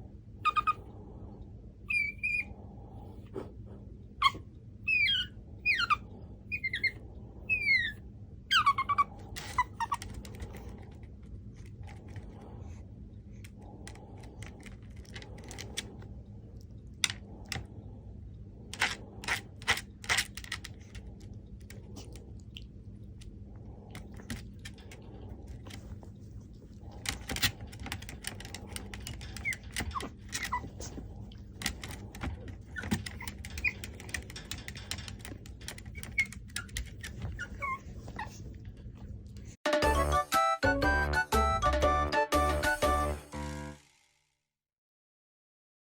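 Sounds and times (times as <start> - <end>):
steady low hum: 0.0 - 39.6
puppy whimpering: 0.4 - 0.9, 1.9 - 2.5, 4.2 - 10.6, 28.8 - 31.0, 32.6 - 34.6, 35.8 - 38.5.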